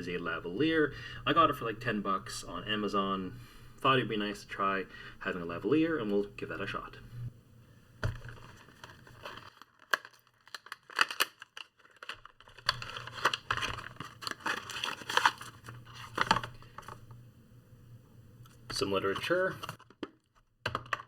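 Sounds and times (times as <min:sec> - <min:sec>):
packaging rustling and crinkling: 0:08.0 - 0:17.1.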